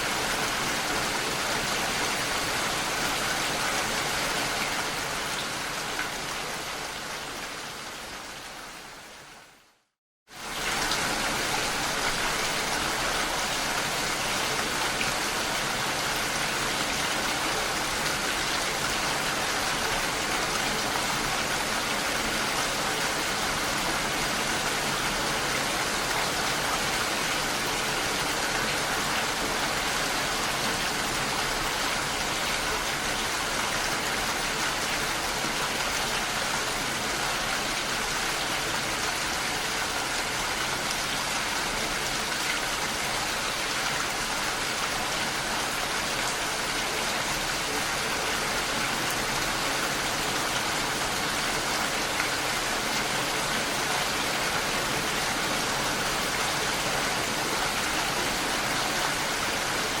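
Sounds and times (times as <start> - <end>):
steady rain falling: 0.0 - 60.0.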